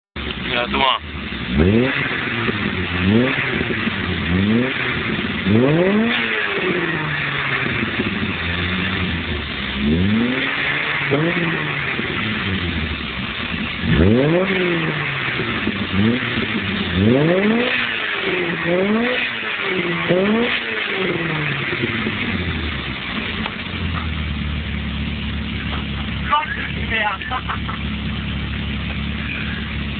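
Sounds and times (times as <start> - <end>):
car engine revving in blips: 0.2 - 29.9.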